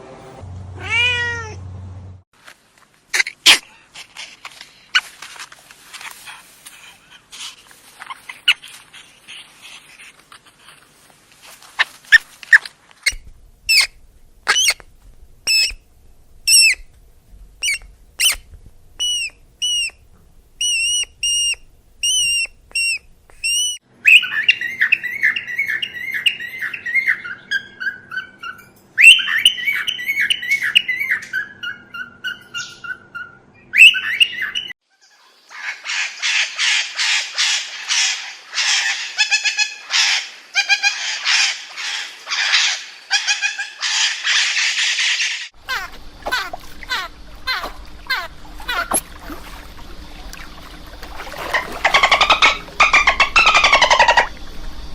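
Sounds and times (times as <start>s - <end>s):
bird calls: 13.1s - 14.8s, 19.0s - 20.0s, 20.6s - 54.8s.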